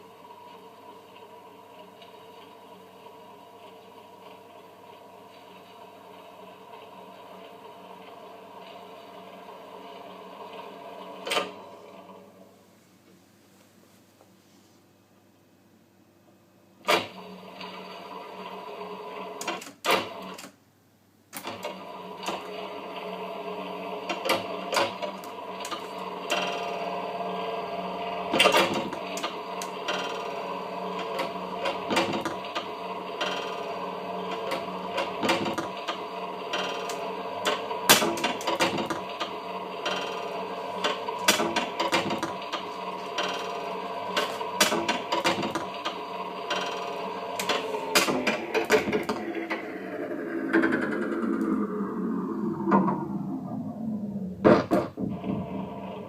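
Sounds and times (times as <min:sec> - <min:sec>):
sharp tape clicks and stutters: 0:36.8 - 0:56.0
layered drone of steady tones: 0:47.4 - 0:56.0.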